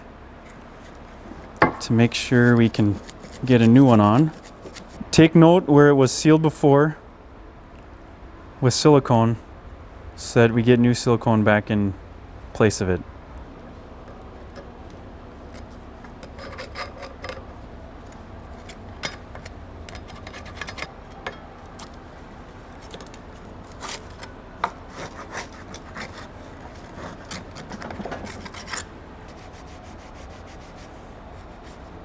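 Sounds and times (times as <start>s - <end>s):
scraping sealant off a surface: 0.5s - 5.0s, 22.6s - 32.0s.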